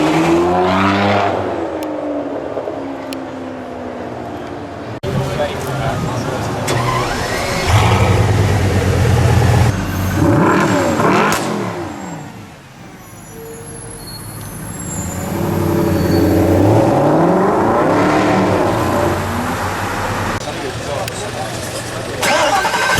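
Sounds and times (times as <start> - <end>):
car engine revving: 5.1 - 12.4, 15.0 - 22.9.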